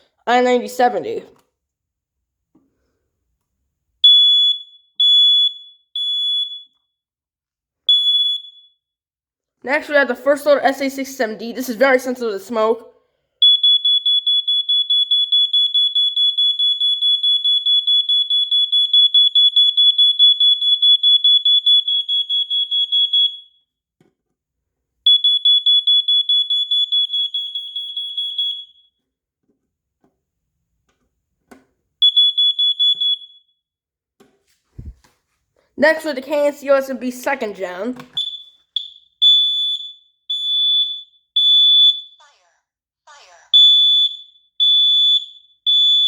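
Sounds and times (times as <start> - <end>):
smoke alarm pulsing tone: 4.0 - 6.9, 7.9 - 8.9, 13.4 - 23.7, 25.1 - 29.0, 32.0 - 33.6, 38.0 - 42.4, 43.4 - 46.0.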